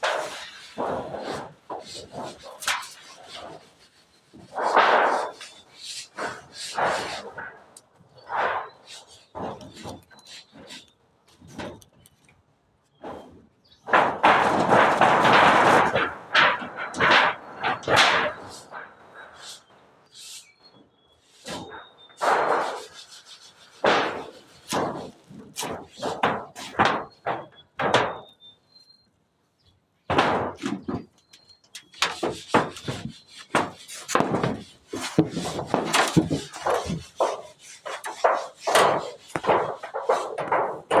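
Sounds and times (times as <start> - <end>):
wooden knocks and thuds: 13.0 - 18.4, 23.8 - 28.3, 30.1 - 41.0.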